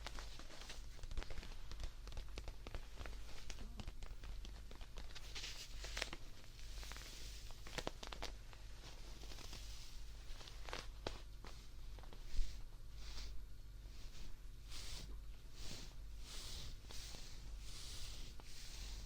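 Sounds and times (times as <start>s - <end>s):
soft clicks and scratches: 0.0s - 12.6s.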